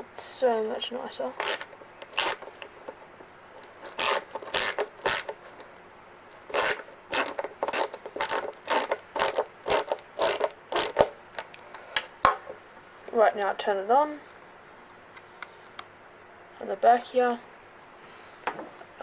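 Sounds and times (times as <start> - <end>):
small plastic parts clicking: 1.4 - 3.0, 3.6 - 5.7, 6.3 - 12.1.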